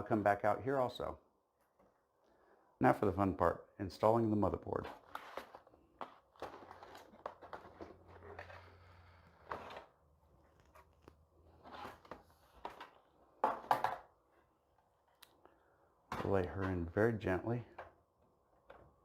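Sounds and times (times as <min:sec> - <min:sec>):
packaging rustling and crinkling: 0:04.8 - 0:13.2.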